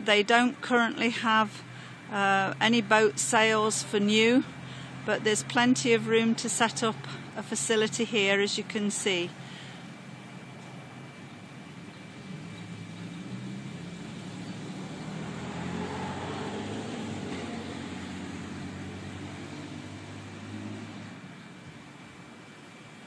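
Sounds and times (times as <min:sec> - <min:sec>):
vehicle passing by: 0:12.1 - 0:21.6.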